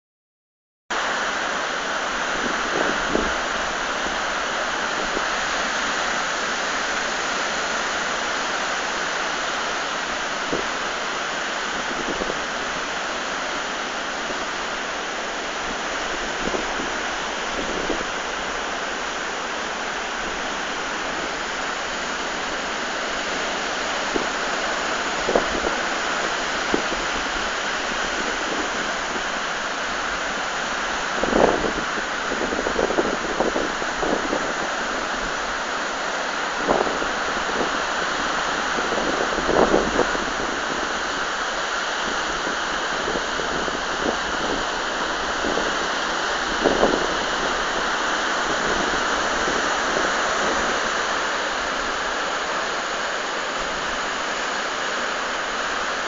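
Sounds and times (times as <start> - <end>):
heavy waves breaking on rocks: 15.6 - 56.0.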